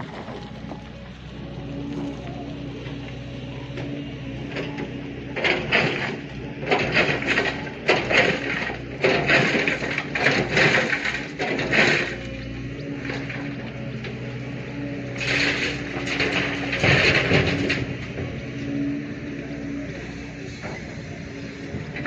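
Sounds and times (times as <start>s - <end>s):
diesel engine running: 0.0s - 22.0s
clattering and grinding crashes: 5.4s - 12.2s, 15.2s - 18.3s.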